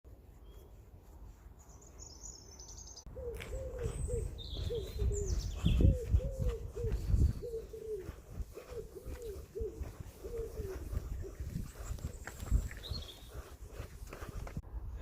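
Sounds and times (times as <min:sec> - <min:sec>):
small birds singing: 0:00.2 - 0:14.3
pigeon cooing: 0:03.1 - 0:11.6.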